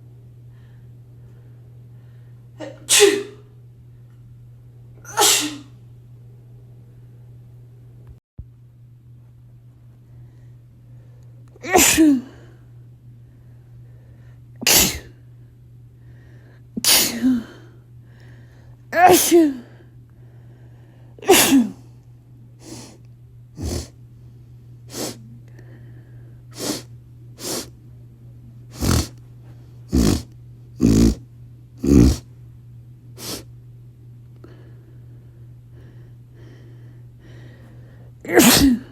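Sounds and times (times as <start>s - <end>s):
person sneezing: 2.6s - 3.4s, 5.1s - 5.7s, 11.6s - 12.4s, 14.6s - 15.2s, 16.8s - 17.6s, 19.0s - 19.7s, 21.2s - 21.8s, 22.6s - 23.0s, 23.6s - 24.0s, 24.9s - 25.3s, 26.6s - 27.7s, 28.7s - 29.2s, 29.9s - 31.2s, 31.8s - 32.3s, 33.2s - 33.5s, 38.2s - 38.9s.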